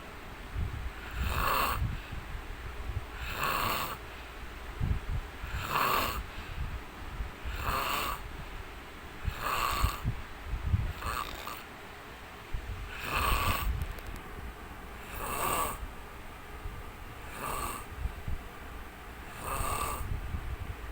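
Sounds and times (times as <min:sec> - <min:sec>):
man snoring: 0:01.0 - 0:01.9, 0:03.2 - 0:04.0, 0:05.4 - 0:06.3, 0:07.4 - 0:08.2, 0:09.2 - 0:10.1, 0:10.9 - 0:11.7, 0:12.9 - 0:13.7, 0:15.0 - 0:15.8, 0:17.3 - 0:18.0, 0:19.3 - 0:20.2.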